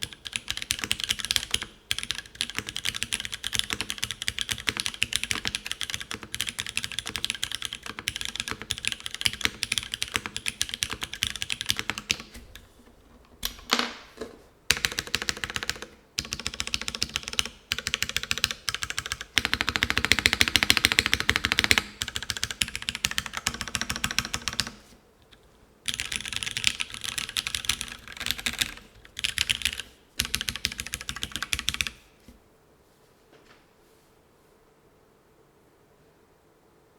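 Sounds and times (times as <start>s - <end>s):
mechanical keyboard typing: 0.0s - 14.1s, 14.7s - 32.0s.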